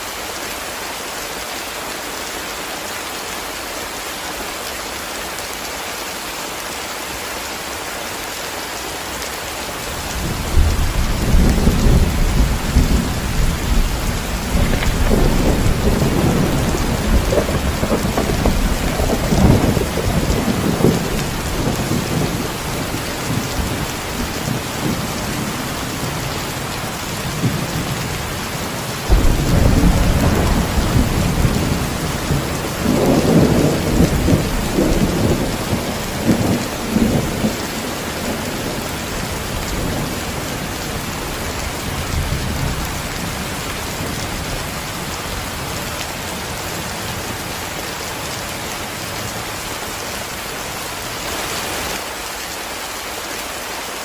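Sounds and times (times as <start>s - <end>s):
heavy rain hissing: 0.0s - 54.0s
thunder rumbling: 10.0s - 45.8s.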